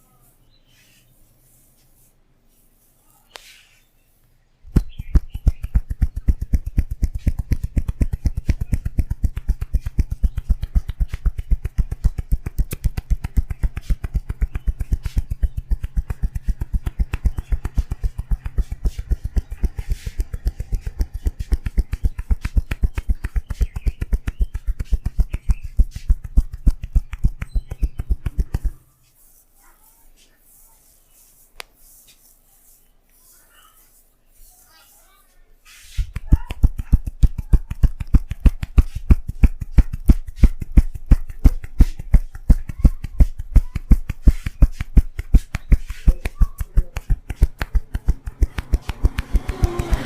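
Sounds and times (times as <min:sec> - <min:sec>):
hands tapping on head: 0:04.7 - 0:28.8, 0:35.9 - 0:50.0.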